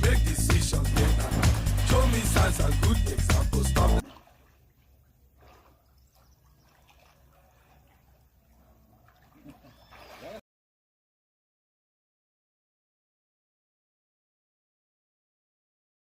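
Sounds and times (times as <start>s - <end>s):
pop song: 0.0s - 4.0s.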